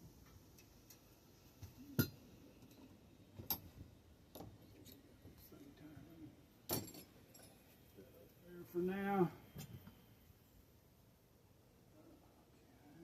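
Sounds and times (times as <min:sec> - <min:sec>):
metal tools clicking and knocking: 0:06.7 - 0:07.6.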